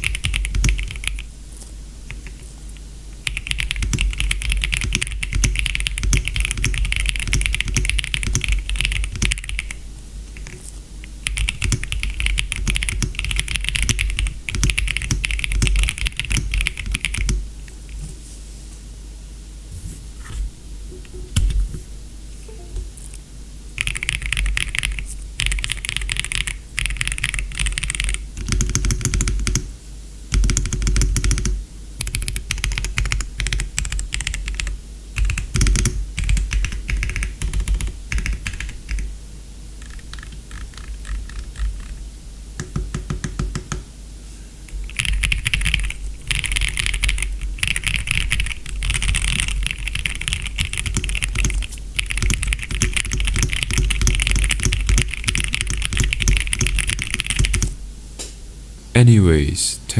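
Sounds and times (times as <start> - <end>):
mechanical keyboard typing: 0.0 - 1.2, 3.2 - 9.8, 11.2 - 17.4, 23.8 - 29.6, 30.4 - 39.0, 44.9 - 57.7.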